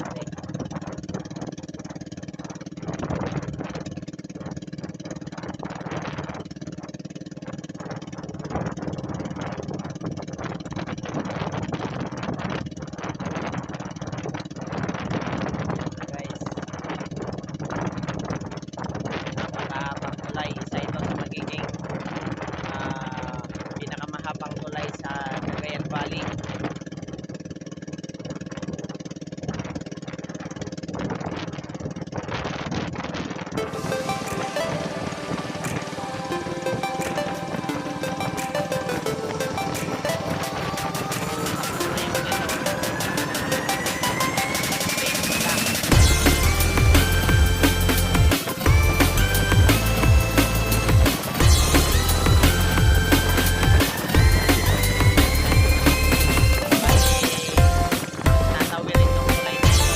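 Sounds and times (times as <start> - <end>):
engine running steadily: 0.0 - 59.9
music: 33.6 - 59.9.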